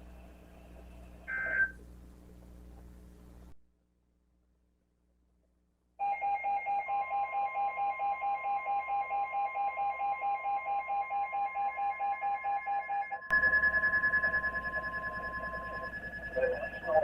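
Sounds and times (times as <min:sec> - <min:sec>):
steady warning alarm tone: 0:06.0 - 0:17.0
rapid pulsing alarm beeps: 0:06.1 - 0:17.0.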